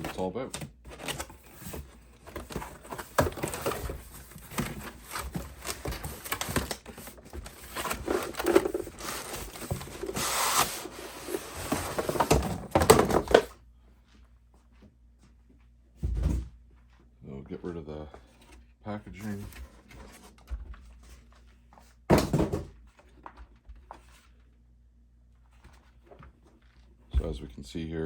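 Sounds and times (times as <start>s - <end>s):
cardboard rasping: 0.0s - 12.4s
cardboard packaging rustling: 0.0s - 13.5s.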